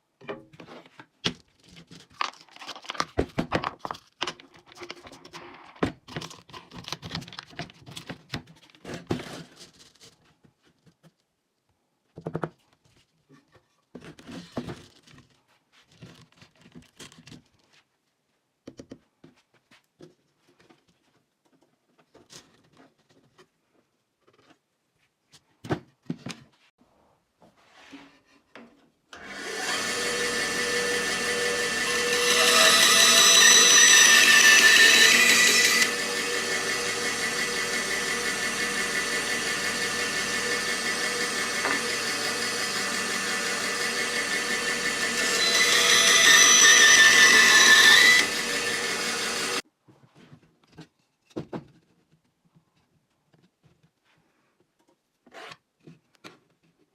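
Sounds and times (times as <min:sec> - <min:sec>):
electric motor whining: 0:29.2 - 0:49.6.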